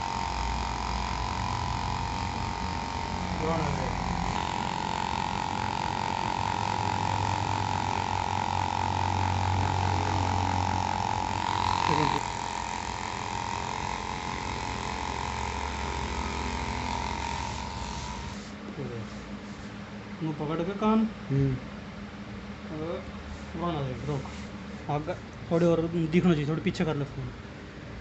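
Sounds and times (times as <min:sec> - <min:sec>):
electric massager buzzing: 0:00.0 - 0:21.6.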